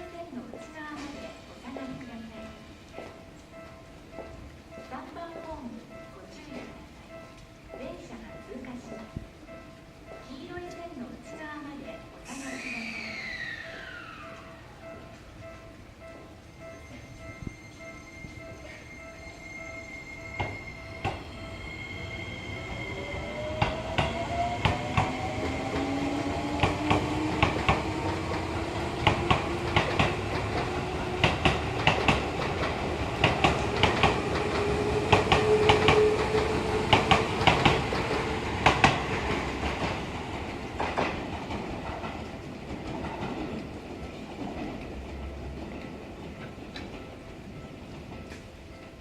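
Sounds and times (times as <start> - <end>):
train traction motor whine: 17.0 - 38.8
wheels clacking over rail joints: 23.4 - 48.8.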